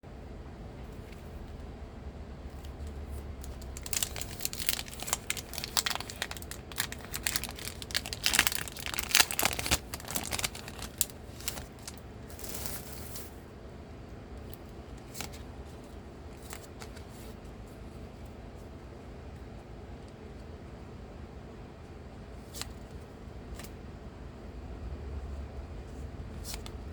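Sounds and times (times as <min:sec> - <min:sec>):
foil wrapper ripping: 0:03.4 - 0:13.2
foil wrapper crinkling: 0:03.4 - 0:13.3.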